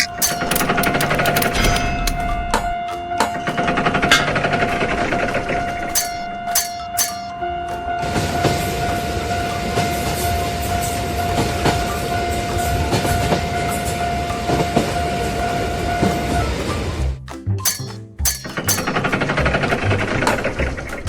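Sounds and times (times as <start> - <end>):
wheels clacking over rail joints: 0.0 - 2.6
steady high tone: 5.9 - 7.5.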